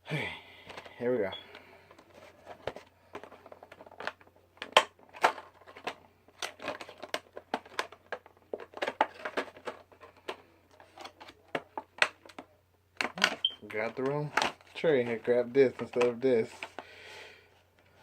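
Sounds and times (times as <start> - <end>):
packaging clicking and crinkling: 1.5 - 16.9.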